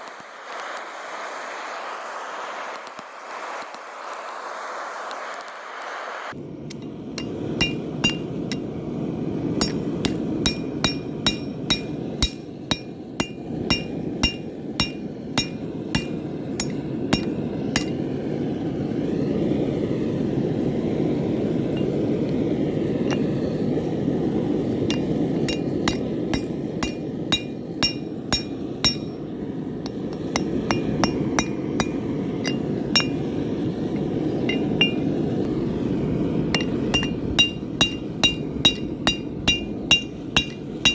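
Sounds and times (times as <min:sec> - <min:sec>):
hammer ringing on anvil: 0:06.7 - 0:08.7, 0:09.6 - 0:18.0, 0:24.9 - 0:29.2, 0:29.9 - 0:33.4, 0:34.4 - 0:35.2, 0:36.6 - 0:40.9.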